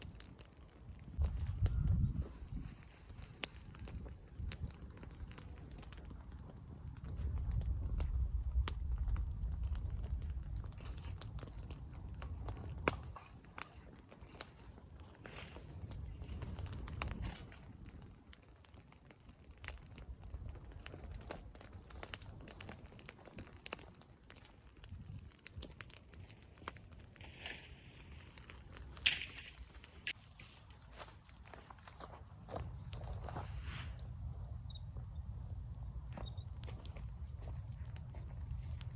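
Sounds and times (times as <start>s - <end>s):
wind rumble on microphone: 0.0s - 30.2s, 32.1s - 38.9s
burning straw crackling: 0.0s - 38.9s
fire popping: 0.0s - 38.9s
fire hissing: 26.1s - 30.2s.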